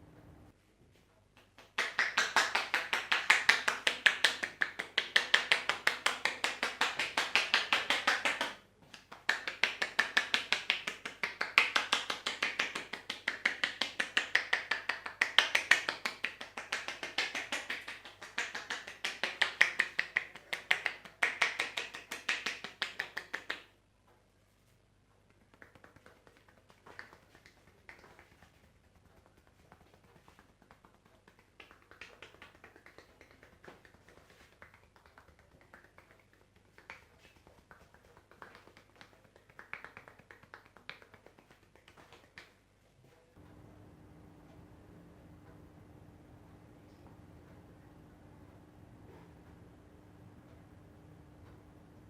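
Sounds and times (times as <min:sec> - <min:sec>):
hands tapping a head: 0:01.4 - 0:24.2, 0:25.3 - 0:42.6.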